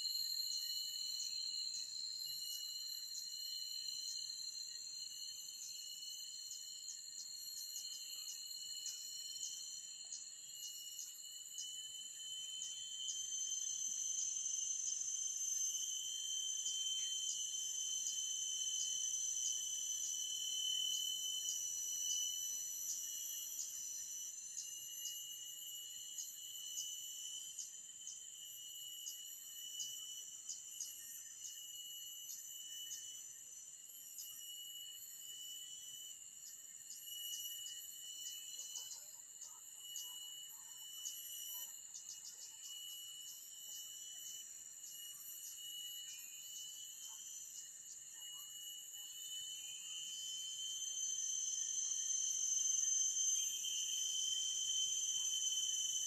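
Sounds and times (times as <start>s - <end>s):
insects shrilling: 0.0s - 56.0s
insect ticking: 0.1s - 34.4s.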